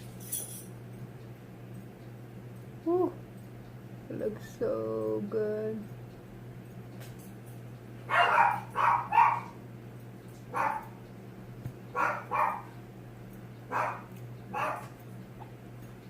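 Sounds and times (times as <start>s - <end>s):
dog barking: 8.1s - 9.6s, 10.5s - 11.0s, 11.9s - 12.8s, 13.7s - 15.0s.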